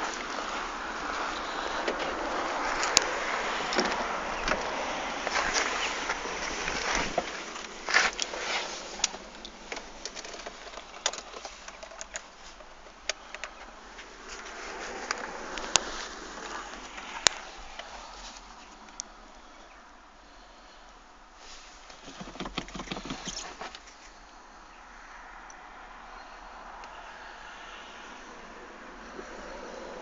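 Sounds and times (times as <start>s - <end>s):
engine ticks and clicks: 0.0s - 19.5s, 21.9s - 24.2s.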